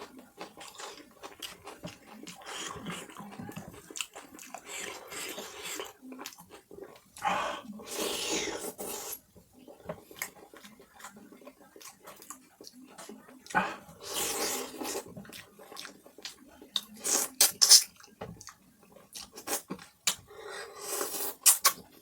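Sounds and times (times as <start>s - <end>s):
person chewing food: 0.0s - 22.0s.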